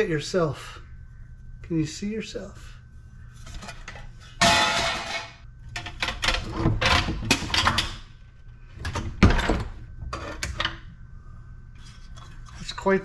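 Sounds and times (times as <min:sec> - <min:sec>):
metal parts clattering and scraping: 0:03.4 - 0:08.0.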